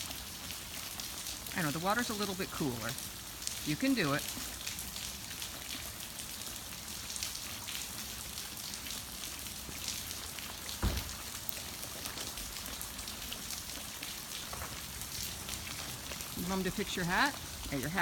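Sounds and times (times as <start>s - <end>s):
rain pattering: 0.0s - 18.0s
low thump: 10.8s - 11.2s.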